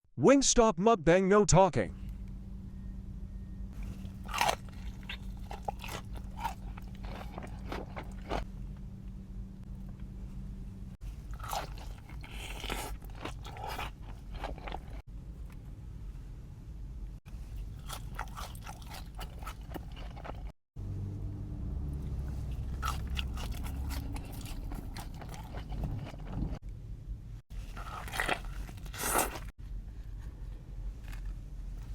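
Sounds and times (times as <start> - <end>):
low steady hum: 1.8 - 31.9
crunching and chewing chicken: 3.8 - 8.5, 11.0 - 15.6, 17.3 - 20.6, 22.3 - 26.6, 27.6 - 31.9.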